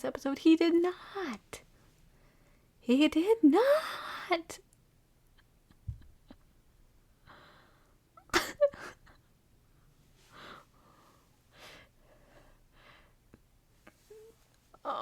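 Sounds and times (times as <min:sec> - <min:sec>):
soft breaths: 0:00.9 - 0:02.8, 0:07.2 - 0:08.1, 0:09.6 - 0:14.7.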